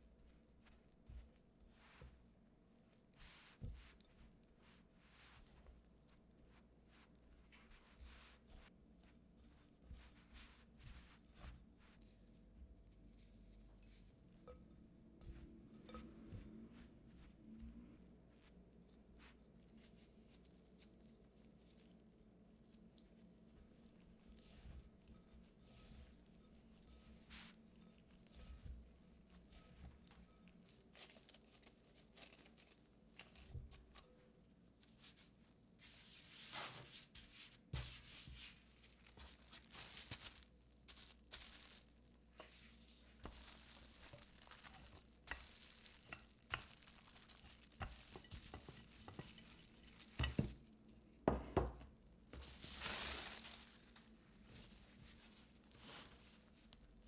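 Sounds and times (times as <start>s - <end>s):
dough scraping in mixing bowl: 35.8s - 50.6s
rustle: 52.5s - 54.0s.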